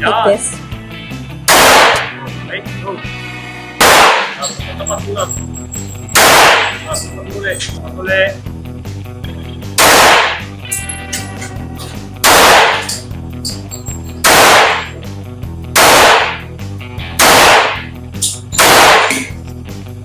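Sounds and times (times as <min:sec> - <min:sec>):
background music: 0:00.0 - 0:20.0
handgun shots with echo: 0:01.5 - 0:02.1, 0:03.8 - 0:04.5, 0:06.2 - 0:06.9, 0:09.8 - 0:10.4, 0:12.2 - 0:13.0, 0:14.2 - 0:15.0, 0:15.8 - 0:16.5, 0:17.2 - 0:19.4.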